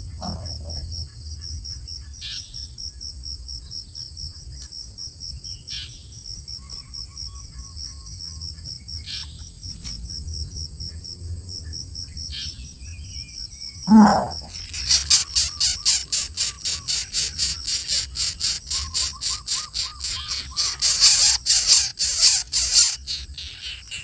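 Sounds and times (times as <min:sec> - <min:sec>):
cricket chirping: 0:00.0 - 0:24.0
faint clicks: 0:14.3 - 0:24.0.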